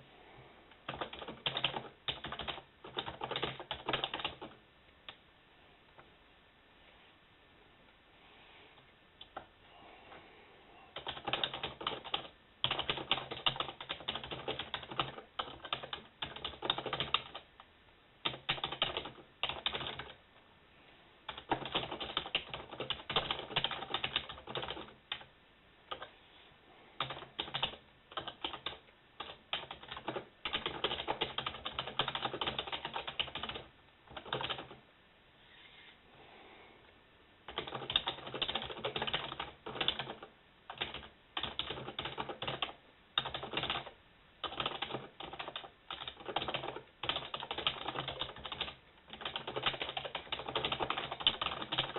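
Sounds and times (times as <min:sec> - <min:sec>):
typing on computer keyboard: 0:00.8 - 0:04.6, 0:11.0 - 0:17.5, 0:18.2 - 0:20.2, 0:21.3 - 0:25.3, 0:25.9 - 0:26.1, 0:27.0 - 0:34.8, 0:37.5 - 0:51.9.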